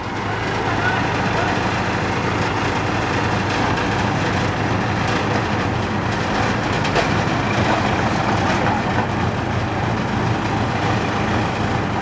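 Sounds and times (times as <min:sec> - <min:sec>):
heavy engine running: 0:00.0 - 0:12.0.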